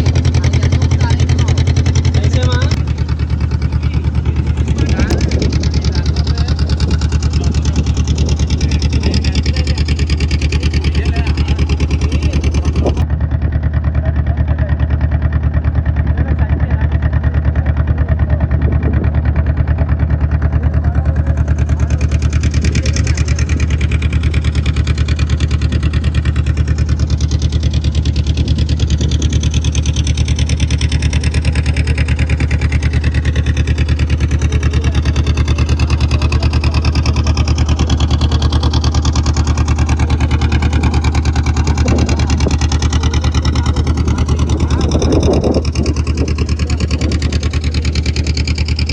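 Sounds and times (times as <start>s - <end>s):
motorboat engine droning: 0.0s - 48.9s.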